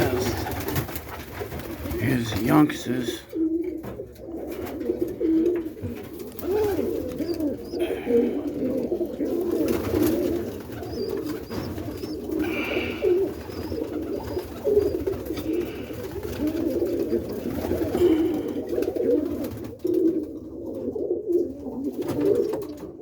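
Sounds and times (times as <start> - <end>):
pigeons cooing: 0.0 - 23.0.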